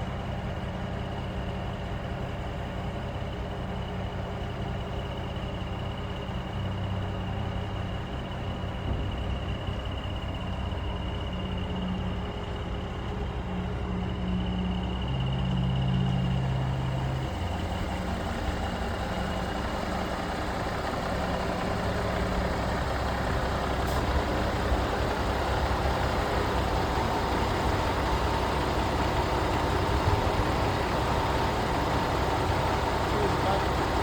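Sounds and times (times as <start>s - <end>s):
truck diesel engine idling: 0.0s - 34.0s.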